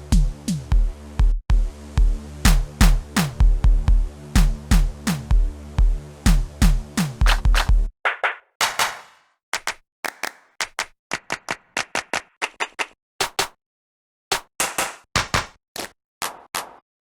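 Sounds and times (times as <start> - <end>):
drum machine beat: 0.0 - 9.2.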